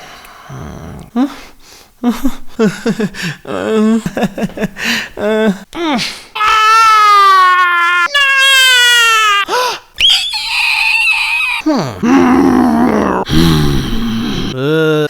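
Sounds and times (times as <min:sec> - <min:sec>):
man making cartoon vocal sounds: 0:10.2 - 0:15.0.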